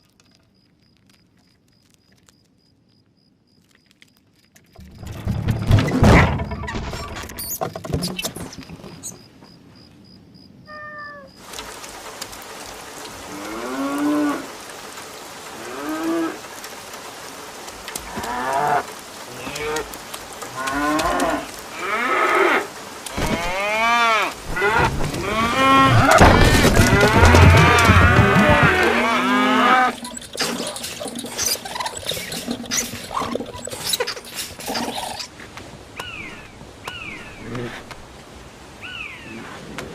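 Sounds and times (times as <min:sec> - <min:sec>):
cattle mooing: 0:20.5 - 0:30.1.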